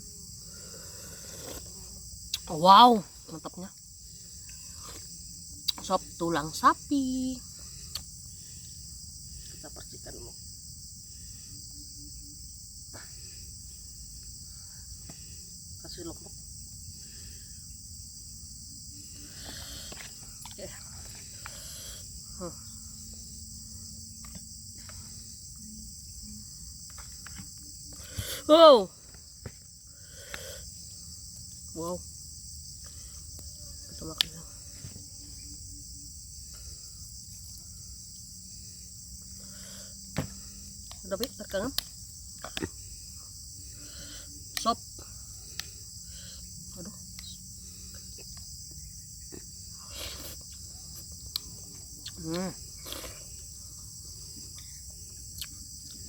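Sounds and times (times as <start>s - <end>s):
high-pitched insect chirring: 0.0s - 56.0s
person slurping soup: 0.7s - 1.7s.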